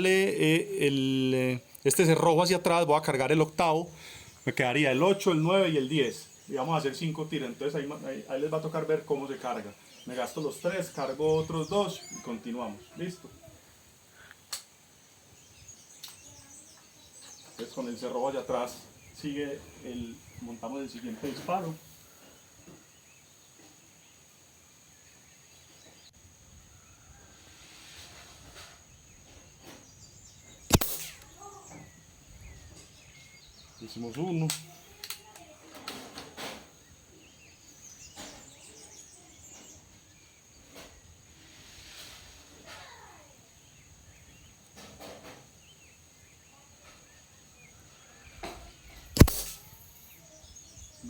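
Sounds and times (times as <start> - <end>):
small birds chirping: 0.0 - 27.3, 28.5 - 41.3, 42.8 - 51.0
faint insect hum: 0.0 - 51.0
suppressed air rifle shot: 30.7 - 31.3, 49.2 - 49.8.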